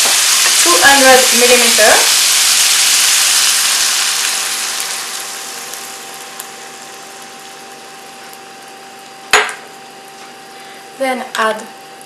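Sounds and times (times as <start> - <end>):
chicken and onions sizzling in pan: 0.0 - 10.4
faint steady hum: 0.1 - 12.0.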